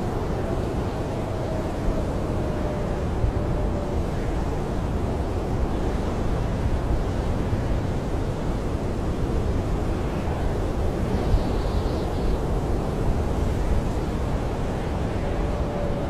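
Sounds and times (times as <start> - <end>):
wind howling against tent: 0.0 - 16.0.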